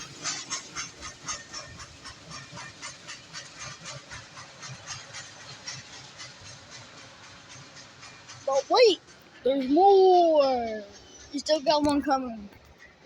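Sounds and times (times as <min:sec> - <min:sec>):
low train rumble: 0:00.0 - 0:13.0
train wheels clicking on rail joints: 0:00.0 - 0:13.0.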